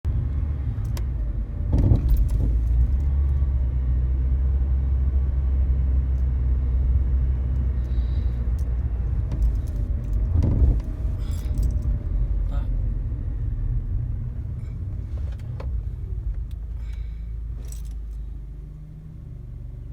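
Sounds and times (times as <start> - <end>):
car road rumble: 0.0 - 19.9
suspension bump knocking: 9.2 - 11.8.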